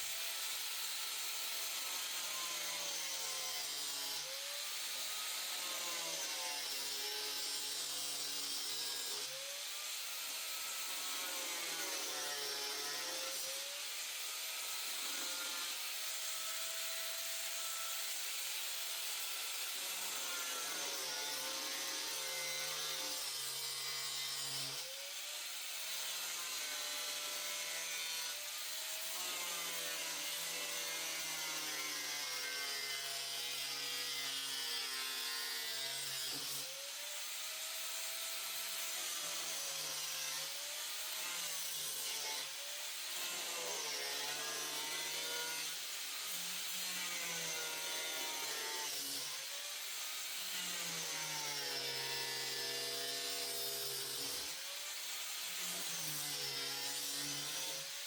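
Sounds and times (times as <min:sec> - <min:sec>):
electric power tool cutting: 0:00.0 - 0:58.0.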